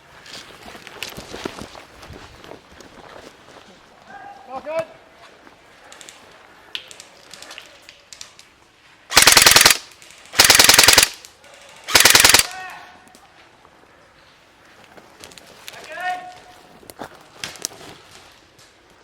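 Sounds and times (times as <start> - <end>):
electric gun full-auto bursts: 9.1 - 11.2, 11.9 - 12.5.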